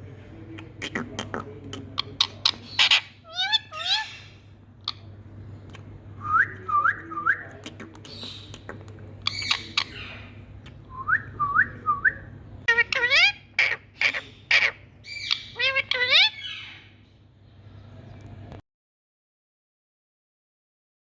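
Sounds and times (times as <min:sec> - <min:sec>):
parrot chirps: 0:00.8 - 0:05.1, 0:08.0 - 0:10.3, 0:12.7 - 0:16.9
parrot squawks: 0:02.0 - 0:05.0, 0:12.7 - 0:16.9.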